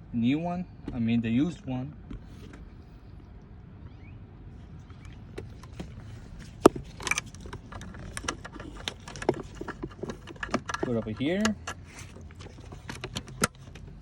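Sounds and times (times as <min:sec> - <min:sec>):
gear shifter parts clicking and rattling: 0:04.8 - 0:14.0.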